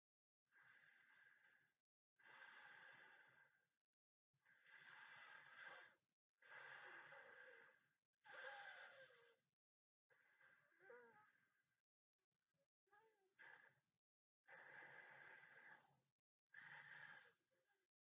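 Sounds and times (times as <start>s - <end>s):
sleeping person breathing: 0.5s - 3.7s, 4.4s - 9.4s, 10.1s - 11.4s, 13.4s - 13.9s, 14.5s - 17.7s.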